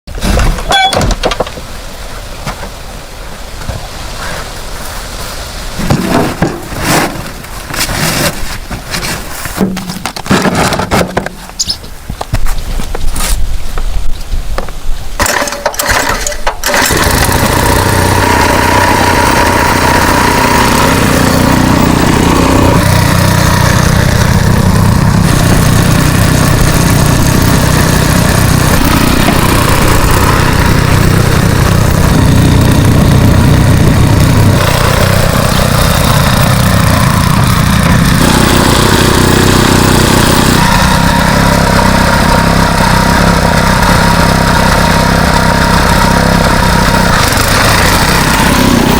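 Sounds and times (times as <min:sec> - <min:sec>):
tractor engine starting and running: 0:15.2 - 0:48.9.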